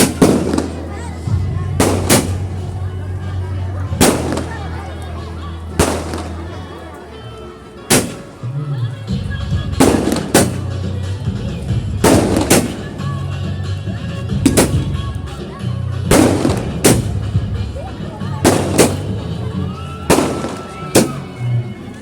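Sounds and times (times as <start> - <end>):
firecrackers banging: 0.0 - 2.8, 3.8 - 6.6, 7.9 - 8.4, 9.7 - 13.6, 14.3 - 15.4, 16.0 - 21.6
music with low bass: 0.0 - 6.8, 7.9 - 21.8.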